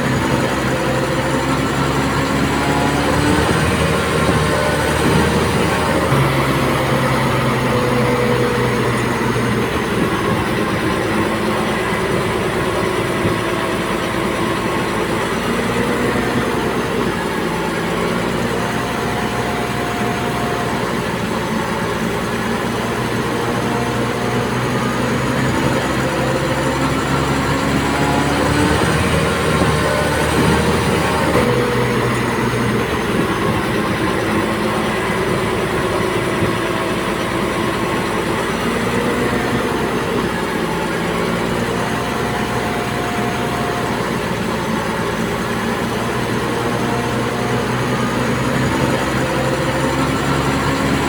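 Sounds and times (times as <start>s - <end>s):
bulldozer diesel engine running: 0.0s - 51.0s.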